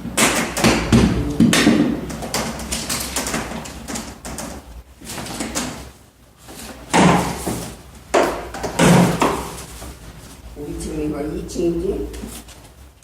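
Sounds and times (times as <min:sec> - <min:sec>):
knocks and clatter on pipes: 0:00.0 - 0:06.0, 0:06.8 - 0:09.6.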